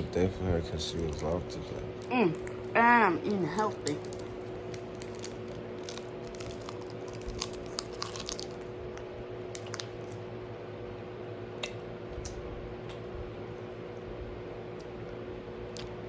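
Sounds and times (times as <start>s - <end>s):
steady low hum: 0.0s - 16.0s
person eating with crunches: 0.7s - 10.2s, 14.7s - 16.0s.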